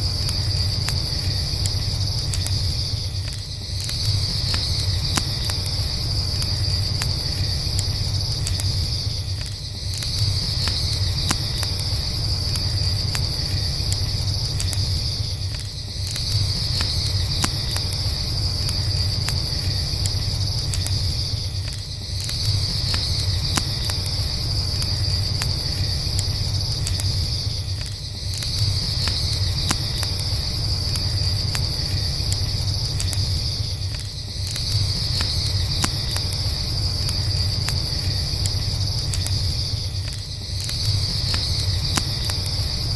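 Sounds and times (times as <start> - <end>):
campfire crackling: 0.0 - 42.9
crickets chirping: 0.0 - 42.9.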